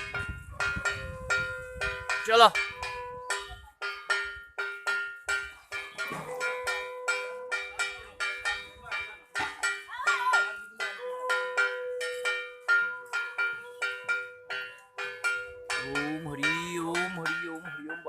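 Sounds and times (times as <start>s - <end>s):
puja bell ringing: 0.0s - 18.0s
conch shell blown: 11.1s - 13.2s.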